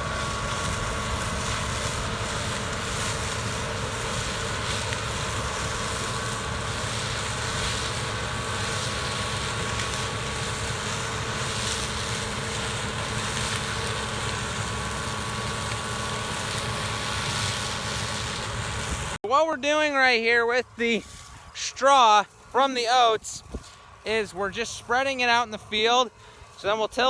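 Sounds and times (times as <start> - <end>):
combine harvester drone: 0.0 - 27.0.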